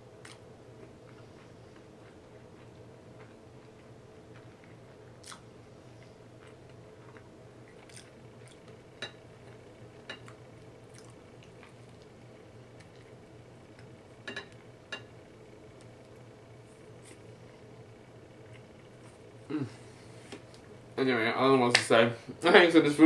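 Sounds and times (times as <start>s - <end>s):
steady low hum: 0.0s - 23.0s
chewing with wet mouth clicks: 1.0s - 5.4s, 6.4s - 8.8s, 9.5s - 12.1s.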